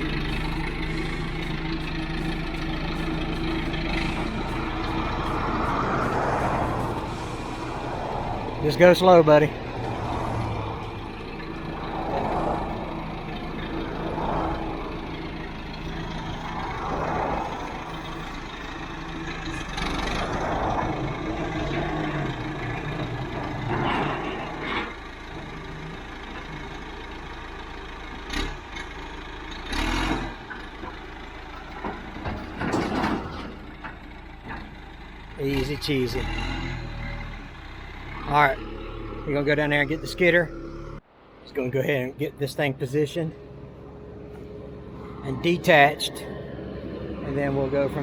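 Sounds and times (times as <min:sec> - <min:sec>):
diesel engine revving: 0:00.0 - 0:48.0.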